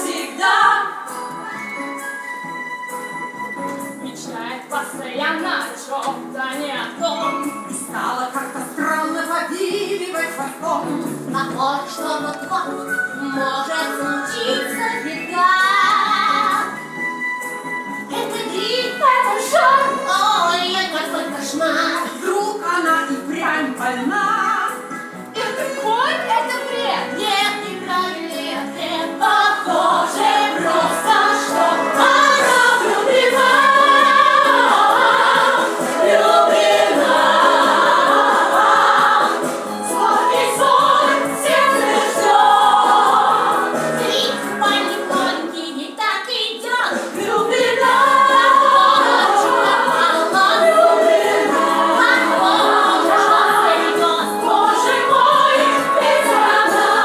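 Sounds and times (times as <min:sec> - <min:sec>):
group singing in chorus: 0:00.0 - 0:01.6, 0:26.6 - 0:45.6, 0:46.9 - 0:57.0.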